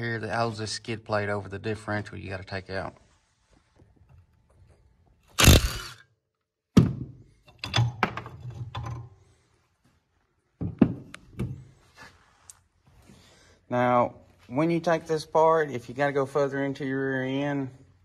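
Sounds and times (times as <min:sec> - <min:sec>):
metal tools knocking and clunking: 0:06.8 - 0:09.2.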